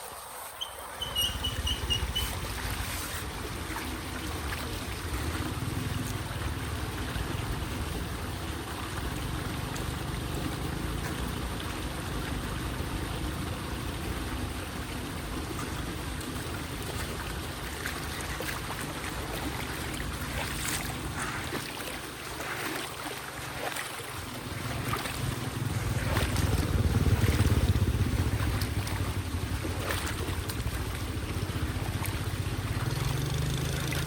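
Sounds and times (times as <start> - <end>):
water splashes: 0.0 - 34.0
water running: 8.7 - 34.0.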